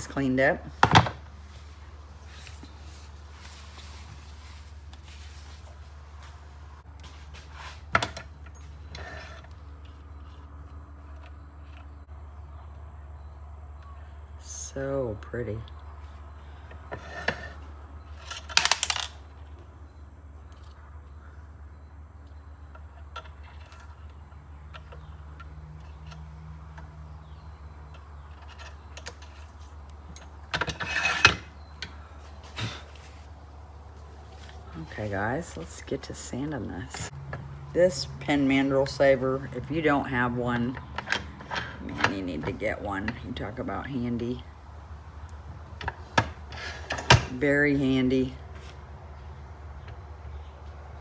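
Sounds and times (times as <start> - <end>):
rustling clatter: 0.8 - 12.0, 16.7 - 19.6, 25.8 - 33.4
handling noises and clicks: 15.7 - 19.7, 40.6 - 43.4
tools clicking and clattering: 17.0 - 19.4, 27.9 - 32.0, 40.5 - 43.3, 45.7 - 47.4.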